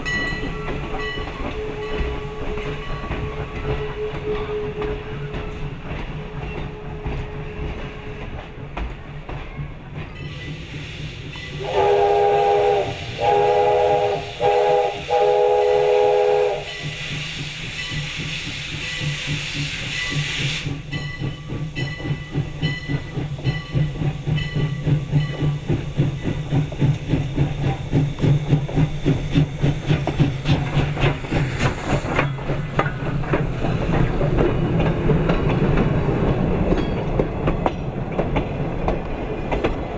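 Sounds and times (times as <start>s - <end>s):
steam locomotive chuffing: 0.0s - 39.9s
steam whistle blasts: 1.0s - 5.7s, 10.5s - 20.8s
steam hissing: 10.2s - 36.8s.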